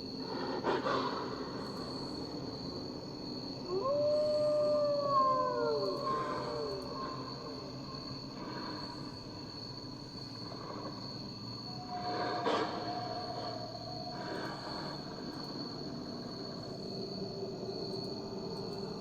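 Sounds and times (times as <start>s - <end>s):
falling howl calls: 3.5s - 9.1s, 11.7s - 14.2s.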